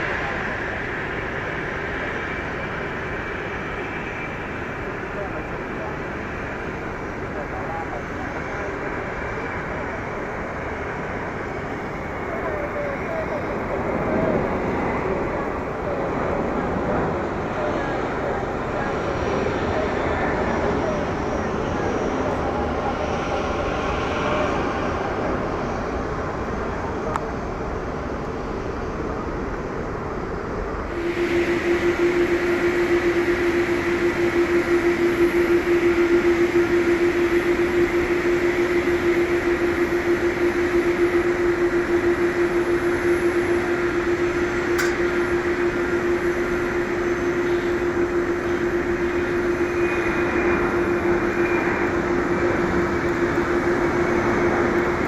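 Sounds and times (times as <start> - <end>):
engine drone: 0.0 - 55.0
low hum: 30.8 - 55.0
thin high whine: 30.9 - 55.0.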